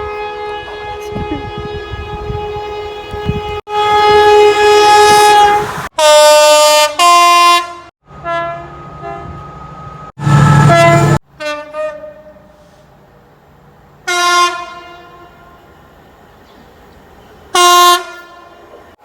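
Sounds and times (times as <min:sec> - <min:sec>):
diesel train horn blasts: 0:00.0 - 0:09.6, 0:10.2 - 0:13.0, 0:14.0 - 0:15.7, 0:17.5 - 0:18.9
low engine drone: 0:10.2 - 0:11.2.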